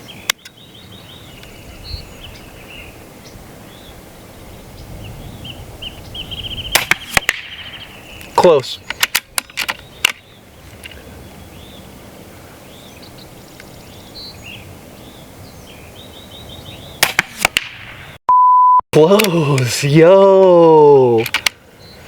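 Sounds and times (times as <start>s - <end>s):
air pistol cracks: 17.0s - 17.9s, 21.2s - 21.6s
censor bleep tone: 18.3s - 18.8s
air pistol mechanical clicks: 21.2s - 21.6s.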